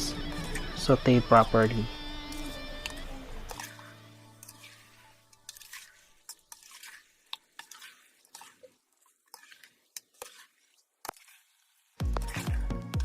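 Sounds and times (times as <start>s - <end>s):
food sizzling in a pan: 4.4s - 7.2s.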